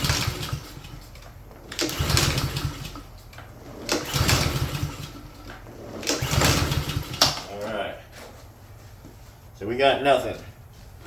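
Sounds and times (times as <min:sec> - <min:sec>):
engine turning over: 0:00.0 - 0:07.5
recoil starter whirring: 0:00.0 - 0:07.5.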